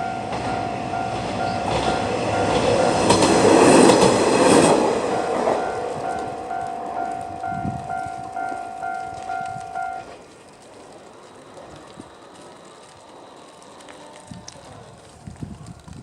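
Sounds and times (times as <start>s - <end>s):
level crossing alarm bell ringing: 0.0s - 10.2s.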